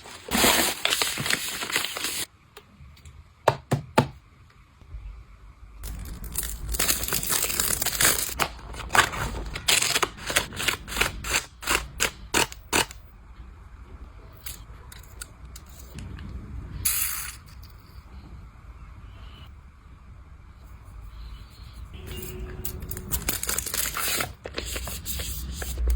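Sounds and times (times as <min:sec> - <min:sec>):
dense crinkling: 0:00.0 - 0:02.3, 0:22.8 - 0:25.6.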